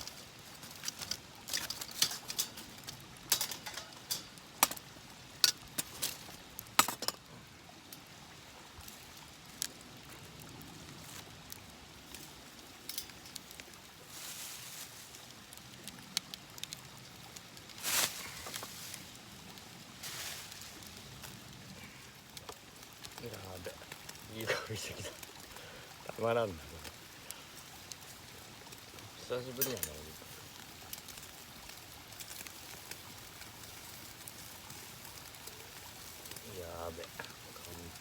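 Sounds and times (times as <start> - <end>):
cooking gear clicking and tapping: 0.0 - 7.2, 12.8 - 13.5, 29.3 - 31.2.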